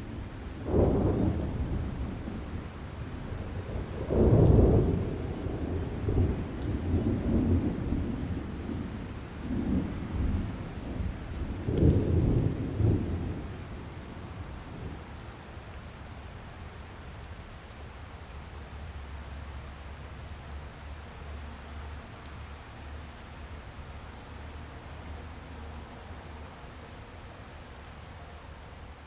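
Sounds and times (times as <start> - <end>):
steady rain: 0.0 - 29.0
thunder rumbling: 0.1 - 15.7.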